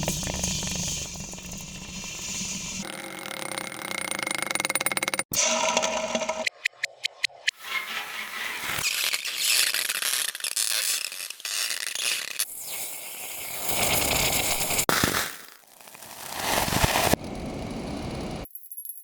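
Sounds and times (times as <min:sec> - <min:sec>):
hissing and sizzling: 0:00.0 - 0:02.9, 0:07.6 - 0:18.4.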